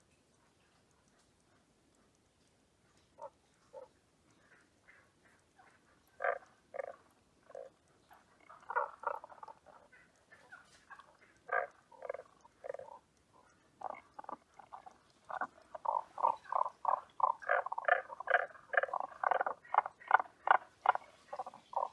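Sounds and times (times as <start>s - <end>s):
frog croaking: 3.2s - 4.0s, 4.8s - 21.9s.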